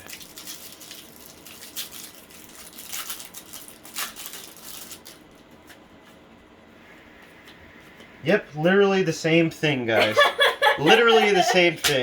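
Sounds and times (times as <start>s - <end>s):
plastic wrapper tearing and crinkling: 0.0s - 5.9s.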